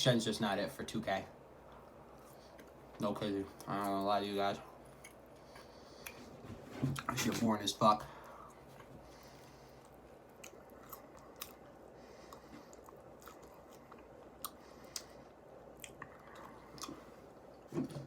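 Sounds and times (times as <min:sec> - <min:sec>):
low steady hum: 0:00.0 - 0:18.0
chewing crunchy food: 0:04.8 - 0:06.4, 0:09.1 - 0:17.7.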